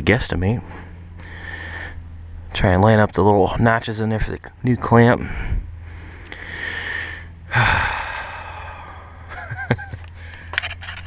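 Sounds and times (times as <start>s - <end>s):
low steady hum: 0.0s - 11.0s
man breathing hard: 0.6s - 2.1s, 5.2s - 9.3s, 10.1s - 10.6s
man grunting: 7.5s - 9.2s.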